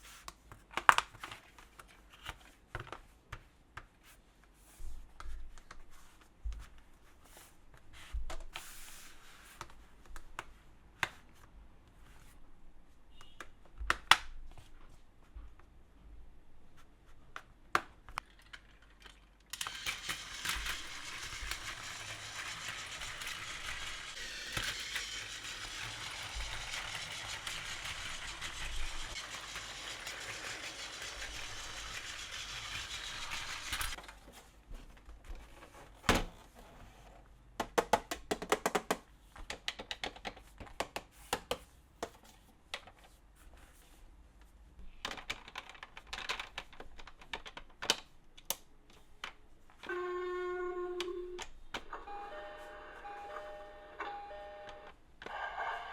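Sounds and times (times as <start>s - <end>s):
plastic toy pieces clicking: 18.2s - 34.0s, 45.1s - 48.6s
toy train rattling whir: 19.5s - 34.0s.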